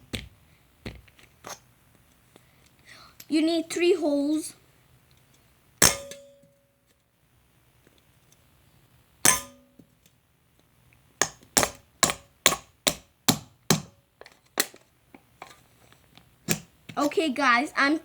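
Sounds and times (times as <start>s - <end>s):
metal can being struck: 5.8s - 6.3s, 9.2s - 9.7s.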